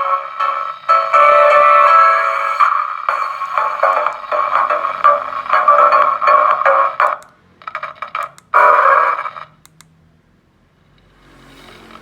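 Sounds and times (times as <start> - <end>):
tinny megaphone siren: 0.0 - 7.2
sharp clicks: 9.6 - 9.9.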